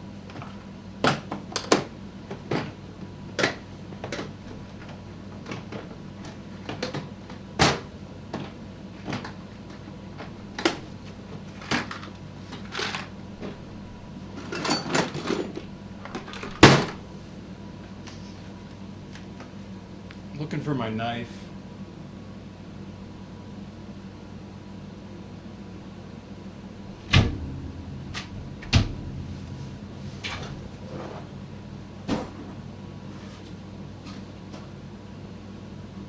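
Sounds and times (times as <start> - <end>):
steady low hum: 26.5 - 34.6.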